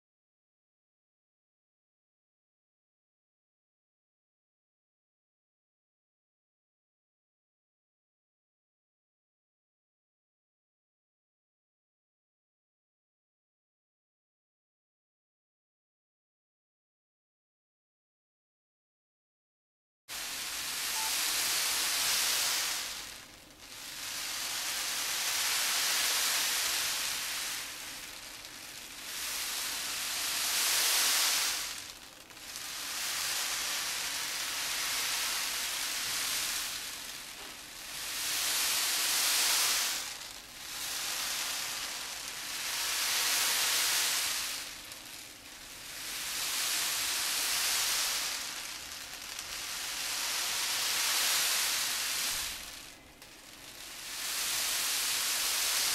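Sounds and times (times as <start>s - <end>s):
beans rolling in a tray: 20.1s - 55.9s.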